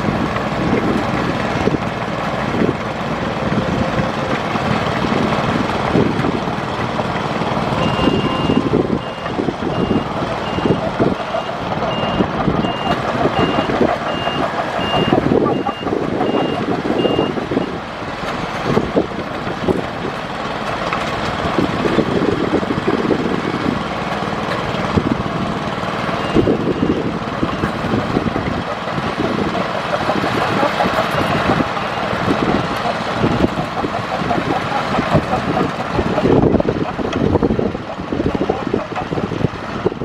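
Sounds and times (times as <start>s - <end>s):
reversing alarm beeping: 7.8s - 17.8s, 26.2s - 27.7s.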